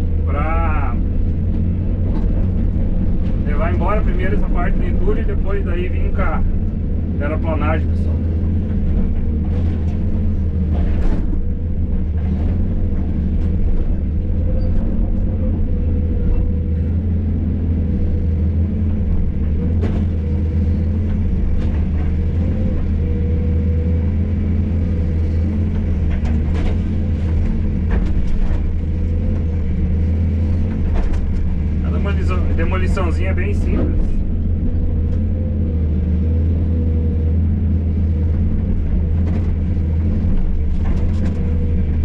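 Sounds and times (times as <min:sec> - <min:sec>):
excavator diesel engine running: 0:00.0 - 0:42.0
demolition knocks and clatter: 0:18.7 - 0:23.3, 0:25.5 - 0:31.9.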